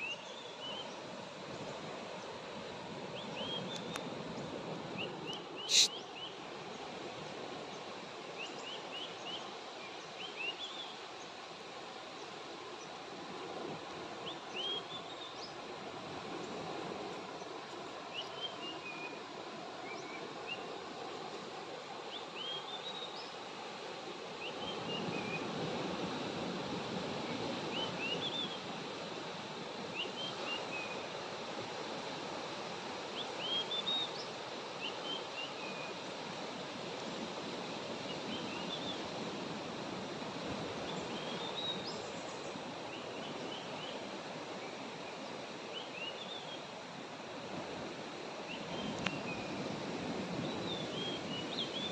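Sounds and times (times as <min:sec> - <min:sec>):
small bird chirping: 0:05.6 - 0:06.0.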